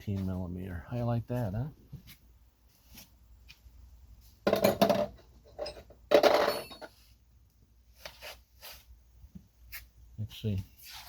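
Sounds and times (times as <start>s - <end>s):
metal wrenches clattering: 4.5s - 7.0s.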